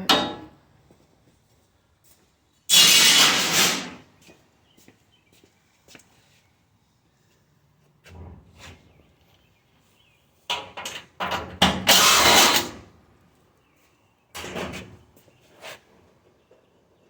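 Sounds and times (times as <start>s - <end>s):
power tool bursts: 2.7s - 4.0s, 11.8s - 12.8s.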